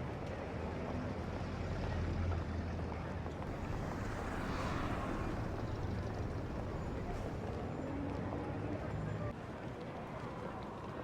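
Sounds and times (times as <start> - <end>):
low rumbling street ambience: 0.7 - 7.8.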